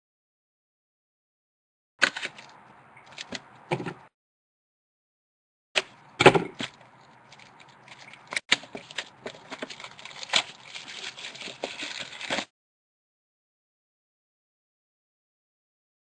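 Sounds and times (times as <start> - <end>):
packaging crinkling and rustling: 6.6 - 12.5.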